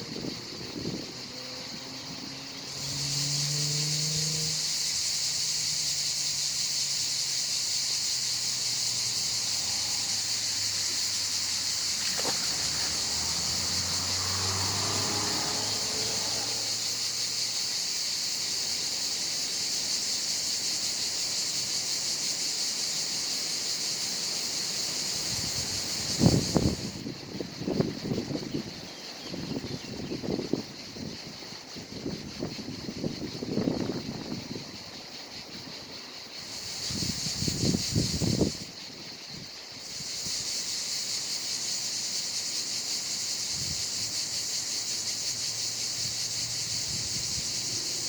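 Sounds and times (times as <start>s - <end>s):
high-pitched insect buzz: 0.0s - 48.0s.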